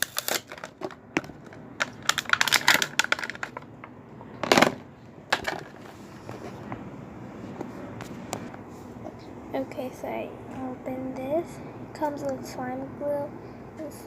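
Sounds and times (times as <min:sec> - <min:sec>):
packaging clicks and crackles: 0:00.0 - 0:03.7
packaging rustle: 0:00.0 - 0:03.7.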